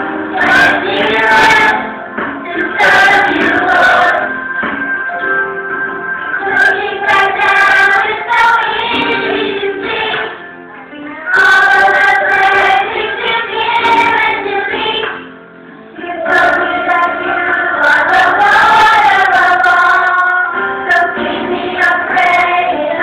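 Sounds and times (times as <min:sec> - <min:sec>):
choir singing worship song: 0:00.0 - 0:04.7, 0:06.3 - 0:10.4, 0:11.3 - 0:23.0.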